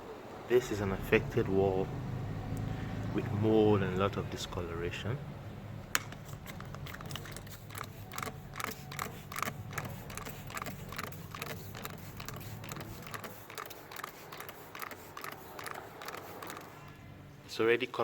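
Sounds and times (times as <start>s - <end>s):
spray bottle click and spray: 6.0s - 16.8s.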